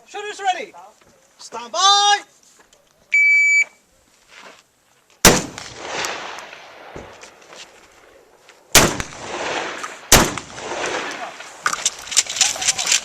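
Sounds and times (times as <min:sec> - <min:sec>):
shotgun shots with echo: 0:05.2 - 0:07.1, 0:08.7 - 0:11.6.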